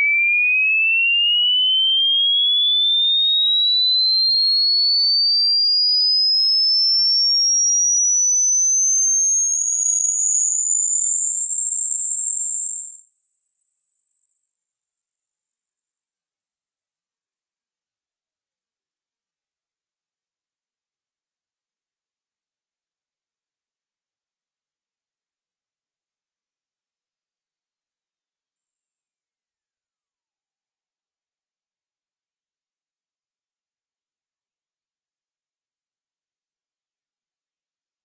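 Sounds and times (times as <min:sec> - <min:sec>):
sine tone sweeping upward: 0:16.6 - 0:28.8.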